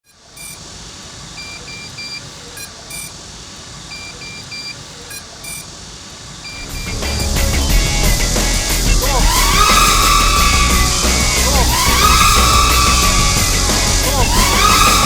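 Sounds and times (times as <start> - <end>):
short high electronic beeps: 0.0 - 0.6, 1.4 - 3.2, 3.9 - 5.7, 6.4 - 7.0.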